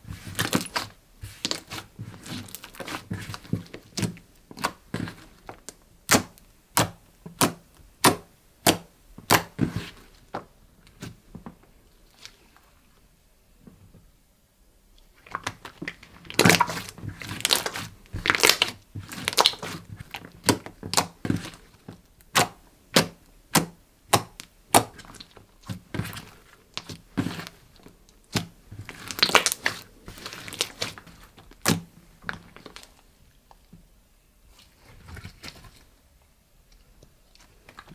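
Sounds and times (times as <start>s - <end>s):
slime popping and crackling: 0.3s - 9.6s, 15.3s - 21.6s, 22.2s - 26.2s, 28.2s - 32.9s.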